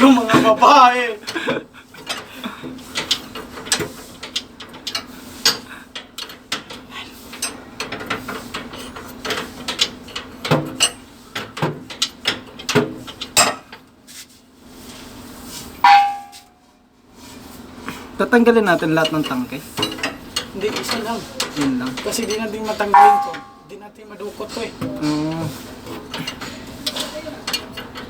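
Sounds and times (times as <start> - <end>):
loud metallic clank: 15.8 - 16.5, 23.0 - 23.7
hand tools clicking on metal: 19.0 - 23.8
steady low hum: 19.8 - 24.0.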